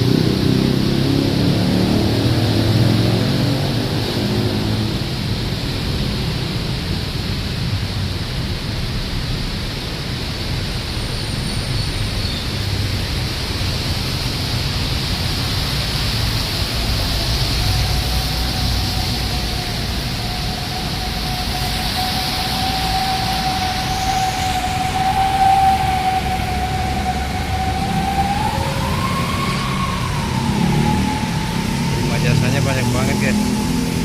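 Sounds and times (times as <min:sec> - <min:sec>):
rain: 0:00.0 - 0:34.0
road traffic rumble: 0:00.0 - 0:34.0
steady high tone: 0:16.7 - 0:34.0.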